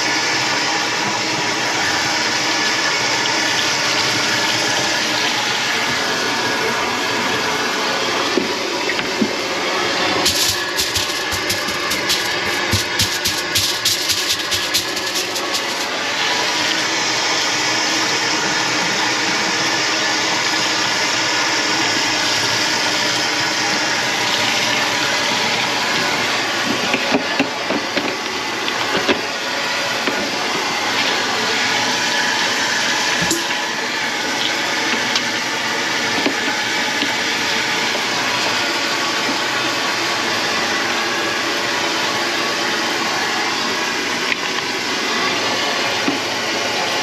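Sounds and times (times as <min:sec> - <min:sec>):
tap water running into sink: 0:10.2 - 0:16.0, 0:33.0 - 0:35.4.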